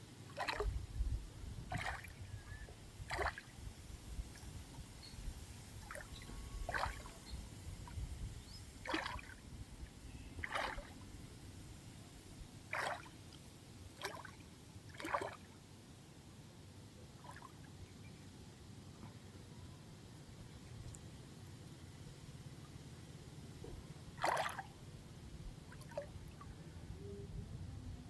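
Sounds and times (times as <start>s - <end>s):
water splashing and sloshing: 0.3s - 0.8s, 1.7s - 2.2s, 3.0s - 4.8s, 5.7s - 8.2s, 8.8s - 9.8s, 10.4s - 11.4s, 12.6s - 15.5s, 17.2s - 17.6s, 23.6s - 24.9s, 25.6s - 26.6s
faint low rumble: 24.7s - 28.0s.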